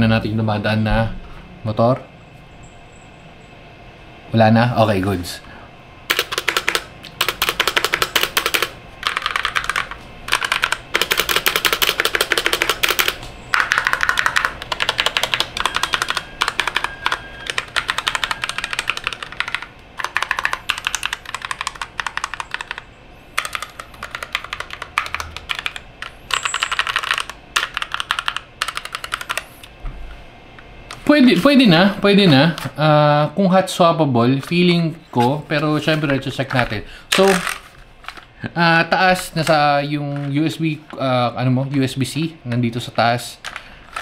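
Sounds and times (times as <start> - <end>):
mechanical keyboard key clacks: 6.1 - 22.8, 23.4 - 29.4.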